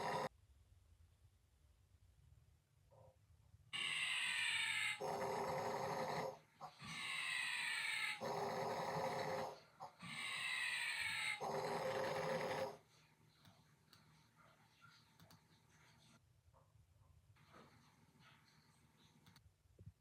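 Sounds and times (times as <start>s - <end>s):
whistling buzzing snoring: 0.0s - 0.3s, 5.0s - 7.0s, 8.1s - 10.2s, 11.4s - 12.8s.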